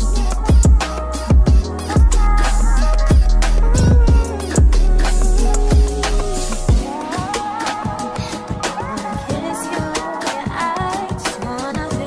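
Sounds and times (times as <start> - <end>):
electronic r and b track: 1.5 - 7.0.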